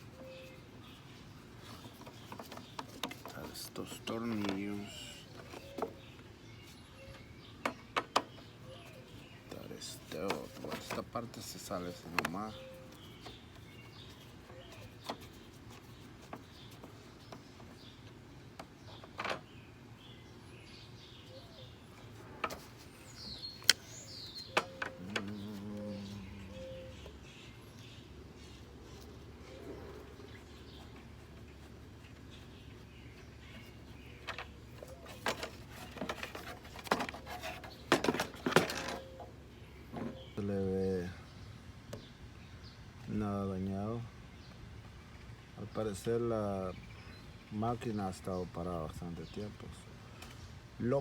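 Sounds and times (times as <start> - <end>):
parts clattering: 9.5 - 17.8, 34.2 - 39.2
parts clicking and rattling: 34.2 - 39.2.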